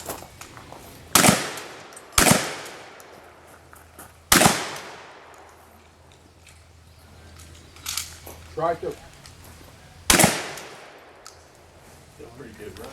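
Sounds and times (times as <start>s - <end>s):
gunshots with echo: 1.2s - 3.0s, 4.3s - 5.3s, 10.1s - 11.2s.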